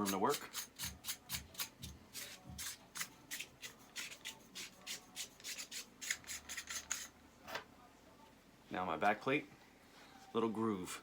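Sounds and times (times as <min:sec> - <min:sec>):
metal threads scraping: 0:00.0 - 0:07.2.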